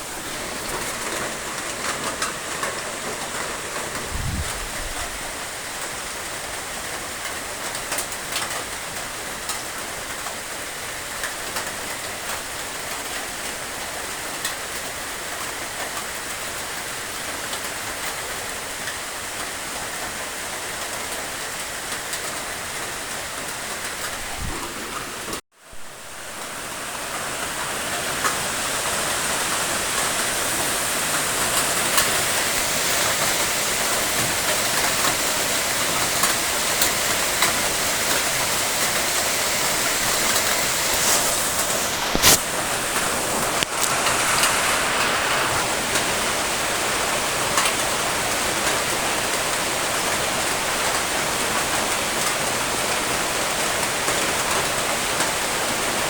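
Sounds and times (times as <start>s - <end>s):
steady rain falling: 0.0s - 56.0s
sharp raindrop ticks: 31.1s - 45.1s.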